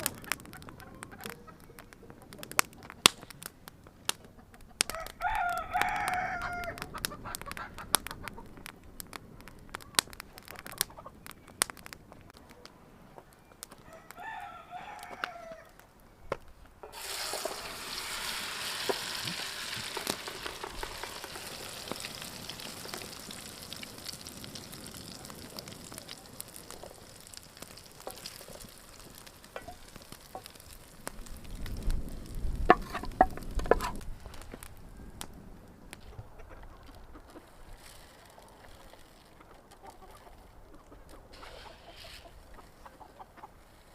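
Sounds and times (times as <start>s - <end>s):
rooster crowing: 4.9s - 6.8s, 13.8s - 15.8s
food sizzling in hot oil: 16.9s - 34.0s.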